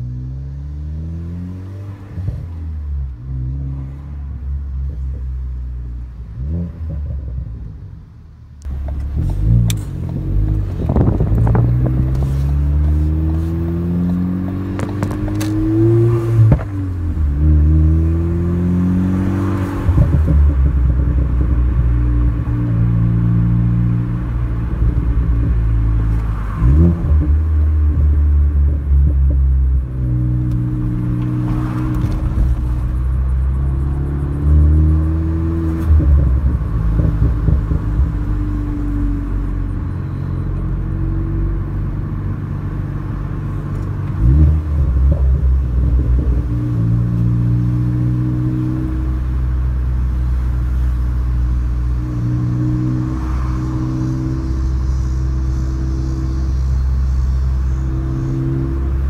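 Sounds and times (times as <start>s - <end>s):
car engine and exhaust driving: 0.0s - 59.0s
exhaust crackling pops: 14.6s - 16.9s, 35.7s - 39.0s.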